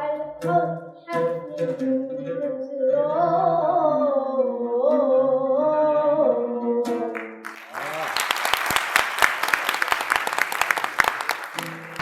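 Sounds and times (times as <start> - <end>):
person singing wordless melody: 0.0 - 7.1
audience applause: 7.1 - 12.0.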